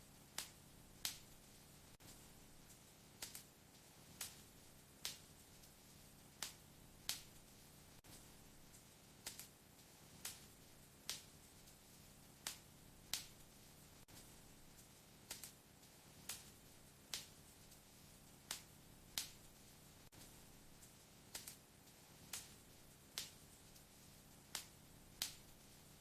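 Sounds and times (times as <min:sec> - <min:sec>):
faint steady hiss: 0:00.0 - 0:26.0
wood fire crackling and popping: 0:00.3 - 0:26.0.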